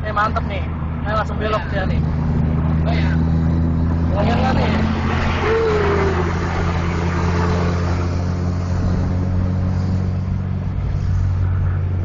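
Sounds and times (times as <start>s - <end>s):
road noise: 0.0s - 12.0s
vehicle engine droning: 0.0s - 12.0s.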